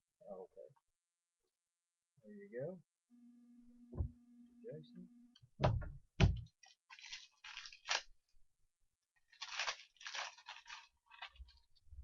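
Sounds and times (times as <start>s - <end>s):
card pack wrapper tearing: 6.6s - 8.2s, 9.2s - 11.7s.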